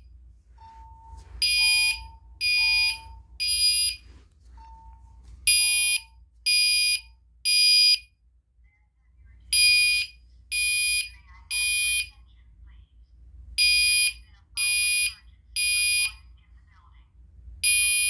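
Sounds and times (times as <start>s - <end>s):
fire alarm horn blasts: 1.4s - 4.0s, 17.6s - 18.0s.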